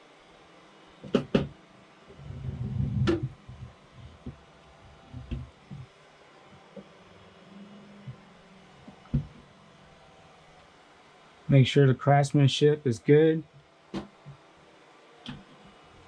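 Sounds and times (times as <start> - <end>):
sharp clicks of pc case: 1.0 - 1.5.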